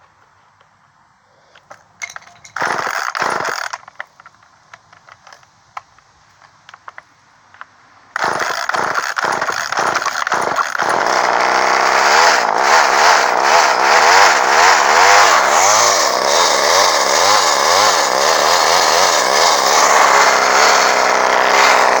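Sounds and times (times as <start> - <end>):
chainsaw engine starting and running: 2.1 - 4.2, 8.2 - 22.0.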